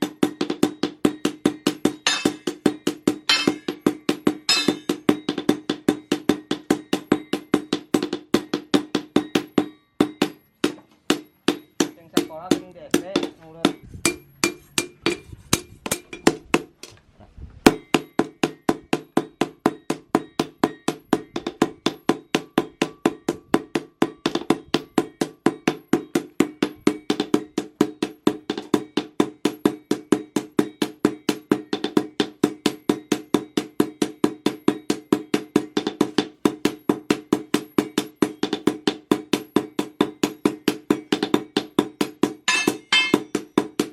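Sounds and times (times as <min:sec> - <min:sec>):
hammer ringing on steel anvil: 0:00.0 - 0:15.2, 0:42.4 - 0:43.6.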